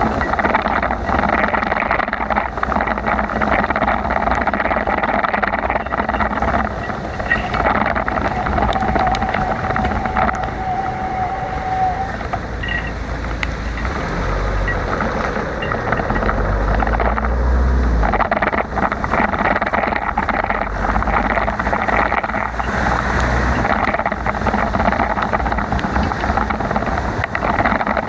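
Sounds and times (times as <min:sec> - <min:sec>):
thin steady tone: 0:00.0 - 0:17.2
deep rumble: 0:00.0 - 0:28.0
road and traffic noise: 0:00.0 - 0:28.0
wind noise on microphone: 0:00.0 - 0:28.0.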